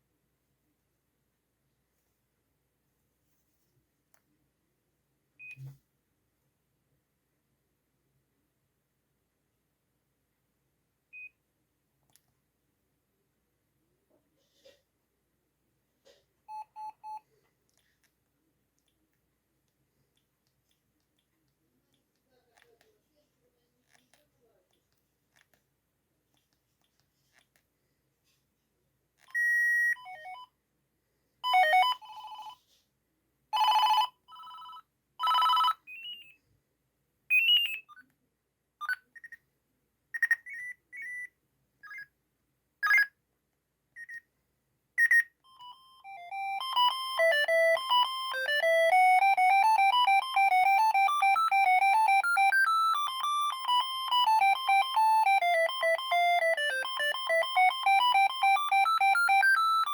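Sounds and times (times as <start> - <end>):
mobile phone ringtone beeps: 29.3 - 30.4, 31.4 - 32.6, 33.6 - 36.3, 45.0 - 59.9
fast beeping ringtone melody: 45.0 - 59.9.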